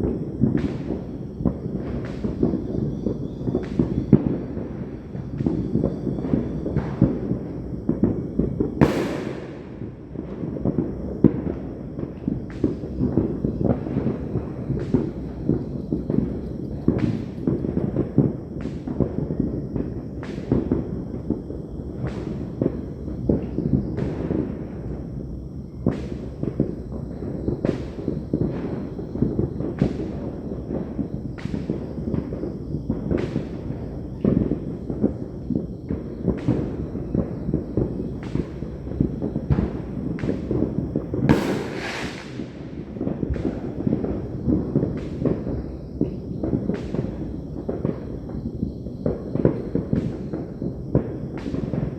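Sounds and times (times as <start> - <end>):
firecrackers cracking: 0.0 - 51.9
firework hissing: 0.0 - 51.9
fireworks booming: 0.0 - 51.9.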